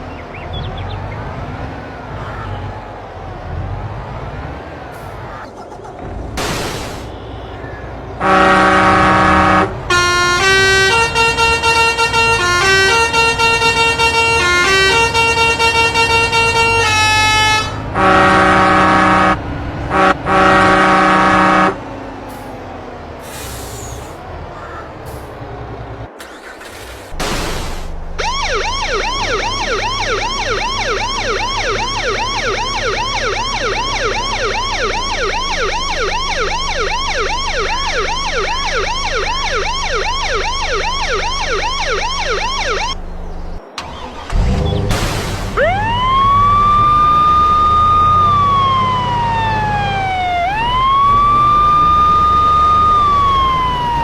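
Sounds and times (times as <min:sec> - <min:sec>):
engine drone: 0:00.0 - 0:54.0
truck multi-tone horn: 0:06.9 - 0:22.6, 0:26.2 - 0:26.7, 0:43.7 - 0:44.9
rising siren whoop: 0:28.2 - 0:43.1, 0:45.6 - 0:54.0.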